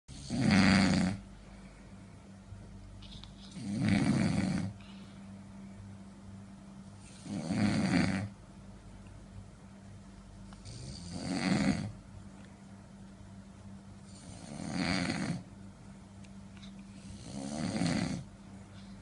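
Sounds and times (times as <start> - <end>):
man snoring loudly: 0.1 - 1.2, 3.6 - 4.7, 7.2 - 8.3, 10.6 - 12.0, 14.2 - 15.4, 17.1 - 18.3.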